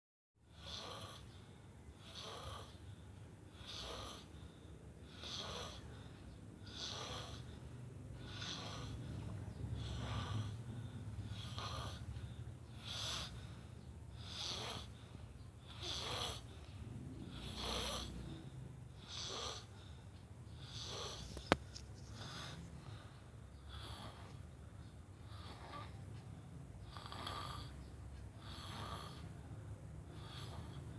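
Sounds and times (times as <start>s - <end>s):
steady low hum: 0.4s - 30.9s
man snoring: 0.5s - 1.2s, 3.5s - 4.4s, 5.1s - 5.9s, 6.7s - 7.5s, 8.2s - 9.1s, 9.8s - 10.6s, 11.3s - 12.1s, 14.2s - 14.9s, 15.7s - 16.6s, 17.3s - 18.3s, 26.8s - 27.7s.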